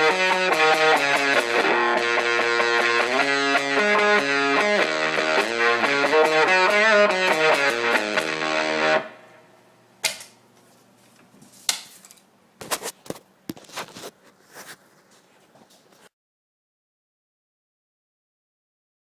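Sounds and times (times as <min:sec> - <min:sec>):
distorted electric guitar notes: 0:00.0 - 0:09.3.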